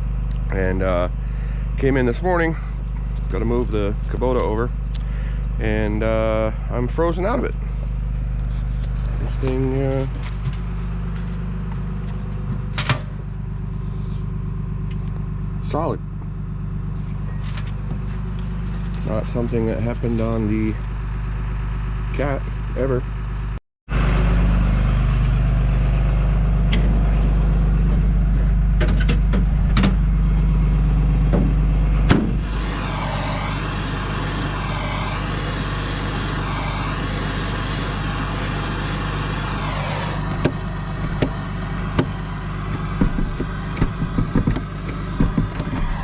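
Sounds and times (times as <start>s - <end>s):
diesel engine idling: 0.0s - 46.0s
knocks: 43.0s - 46.0s.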